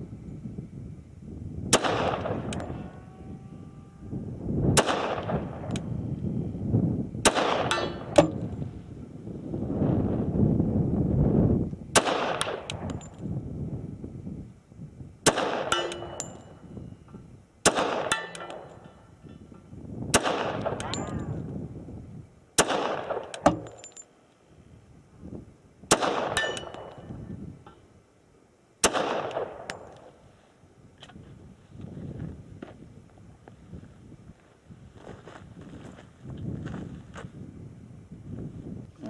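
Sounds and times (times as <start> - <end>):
pistol shots with echo: 1.7 - 2.9, 4.8 - 5.9, 7.2 - 8.5, 12.0 - 13.0, 15.2 - 16.6, 17.6 - 18.9, 20.1 - 21.4, 22.6 - 23.8, 25.9 - 27.0, 28.8 - 30.1
metallic pings: 15.7 - 17.2, 18.1 - 19.4, 26.4 - 27.1.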